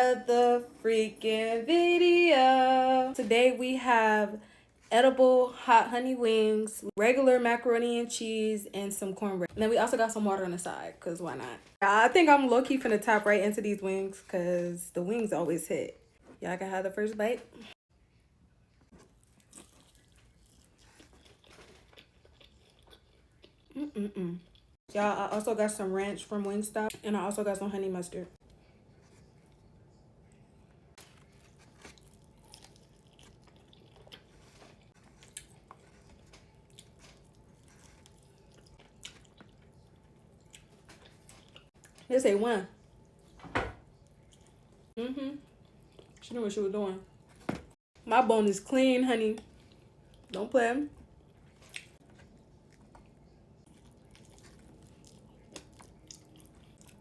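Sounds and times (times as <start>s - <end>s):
low room hum: 0.0s - 57.0s
chewing and biting food: 18.9s - 23.8s, 24.4s - 24.8s, 31.0s - 42.1s, 42.8s - 46.3s, 51.0s - 57.0s.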